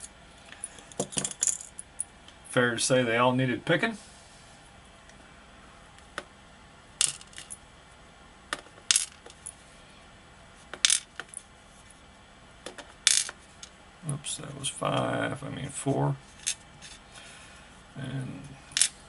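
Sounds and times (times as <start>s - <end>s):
lock pins clinking on hard surface: 0.9s - 2.1s, 7.0s - 7.6s, 8.6s - 9.5s, 10.8s - 11.4s, 18.7s - 19.0s.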